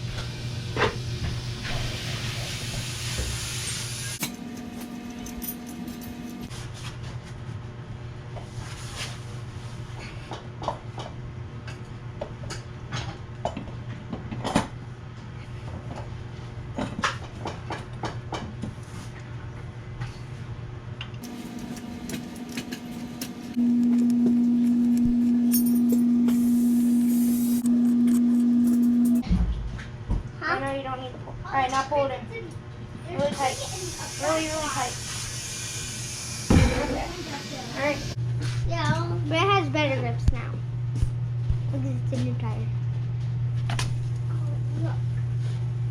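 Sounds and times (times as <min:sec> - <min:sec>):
machine hum: 0:03.8 - 0:06.5, 0:21.2 - 0:29.3
clicks and knocks of tools: 0:04.2 - 0:06.5, 0:21.0 - 0:24.3
loud steady hum: 0:04.2 - 0:06.5, 0:21.2 - 0:29.5.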